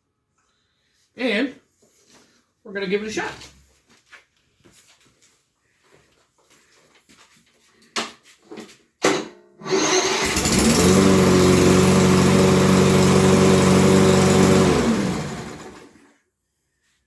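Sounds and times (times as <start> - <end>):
lawn mower engine running: 9.6 - 16.1.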